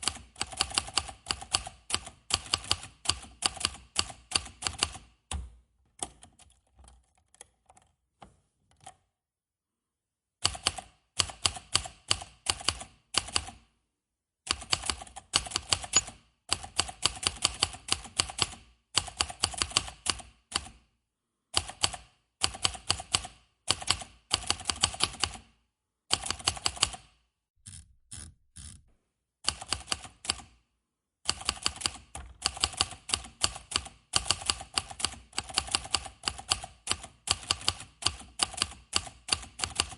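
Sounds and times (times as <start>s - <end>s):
manual typewriter typing: 0.0s - 5.1s, 10.4s - 13.6s, 14.5s - 20.8s, 21.6s - 25.4s, 26.1s - 27.1s, 29.4s - 30.5s, 31.3s - 39.9s.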